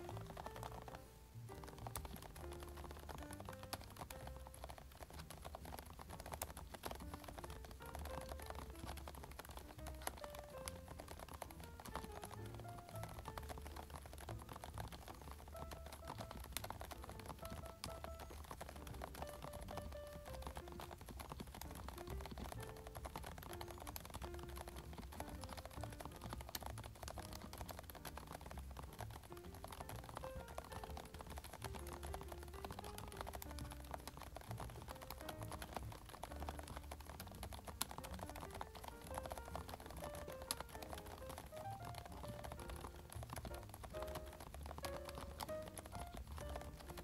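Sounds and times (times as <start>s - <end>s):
background music: 0.0s - 47.0s
soft keyboard typing: 0.0s - 47.0s.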